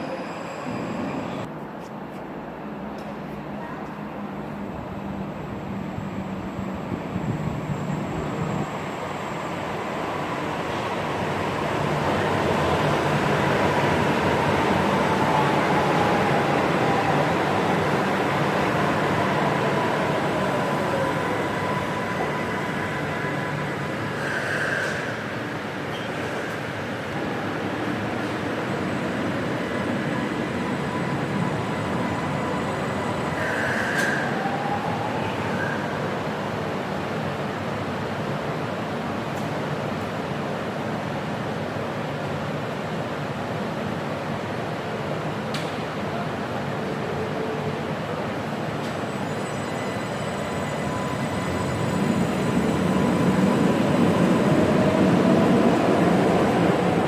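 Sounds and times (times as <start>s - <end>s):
light-rail train running noise: 0.0s - 57.0s.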